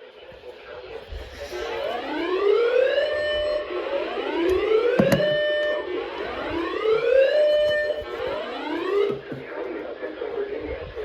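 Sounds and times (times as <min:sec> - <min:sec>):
electronic whoop alarm: 0:02.0 - 0:09.2.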